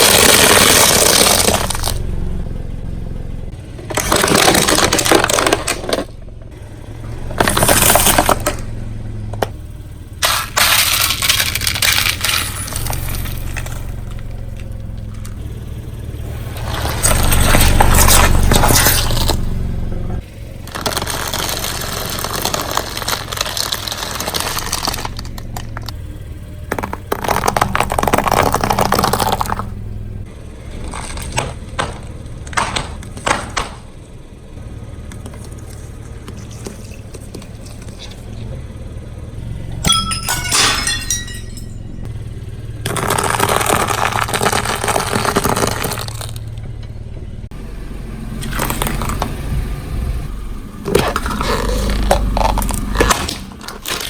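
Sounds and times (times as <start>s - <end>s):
tyre crushing brittle objects: 0.0s - 2.1s, 3.7s - 6.1s, 7.2s - 8.7s, 10.2s - 15.4s, 16.4s - 19.5s, 20.6s - 26.0s, 26.6s - 29.8s, 30.7s - 33.9s, 35.1s - 38.6s, 39.7s - 41.7s, 42.8s - 46.6s, 50.8s - 54.0s
car engine rumble: 0.0s - 54.0s
glass breaking and clinking: 39.8s - 42.0s.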